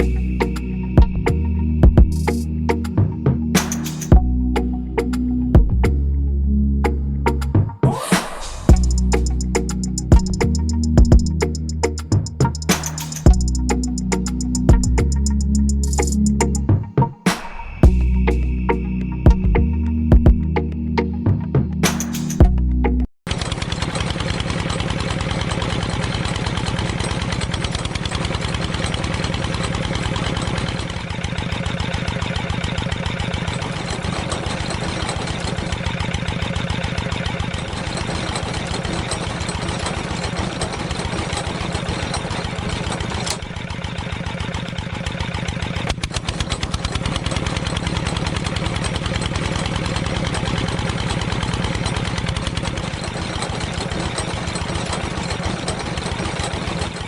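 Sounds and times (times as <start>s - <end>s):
small engine running: 8.3s - 16.6s, 23.3s - 57.0s.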